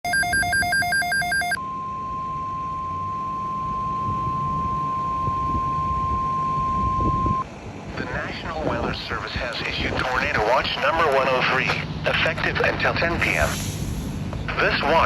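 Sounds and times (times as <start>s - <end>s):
pulsing electronic data tones: 0.0s - 1.6s
long steady warning beep: 0.0s - 7.4s
faint radio static: 7.9s - 13.6s, 14.5s - 15.0s.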